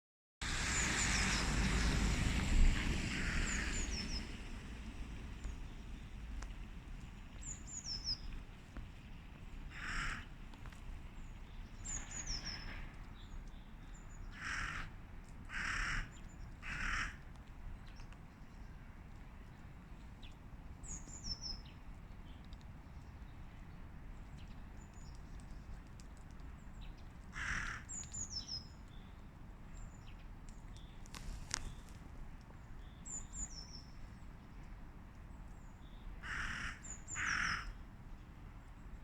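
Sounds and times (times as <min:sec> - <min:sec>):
harsh bird calls: 0:03.0 - 0:04.4, 0:36.2 - 0:37.8
birds chirping high and thin: 0:03.1 - 0:04.4.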